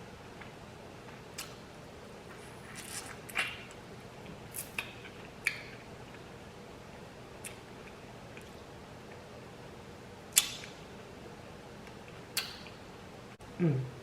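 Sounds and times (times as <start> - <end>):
wet mouth clicks and smacks: 1.4 - 1.6, 4.5 - 5.8, 10.4 - 10.8, 12.3 - 12.8.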